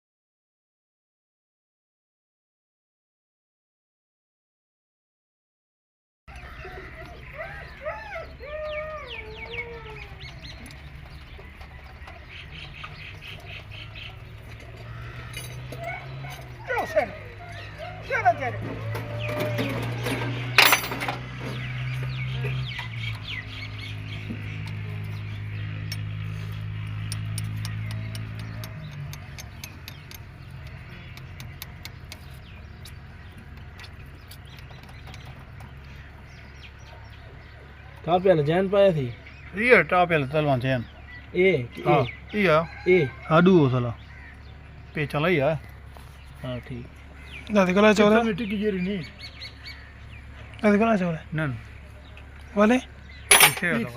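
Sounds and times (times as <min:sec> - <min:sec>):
chickens clucking: 0:06.3 - 0:20.6
chickens calling: 0:06.3 - 0:53.9
diesel tractor engine running: 0:06.3 - 0:53.9
sharp clicks and ticks: 0:25.8 - 0:36.0.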